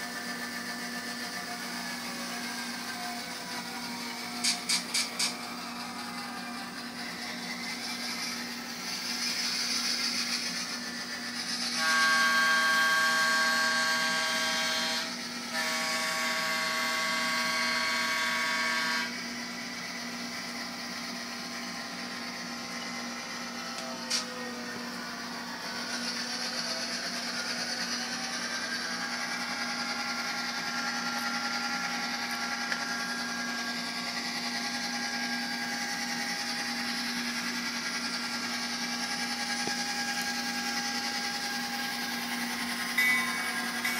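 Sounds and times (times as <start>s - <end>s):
model locomotive engine hum: 0.0s - 43.9s
locomotive horn blasts: 11.8s - 19.2s.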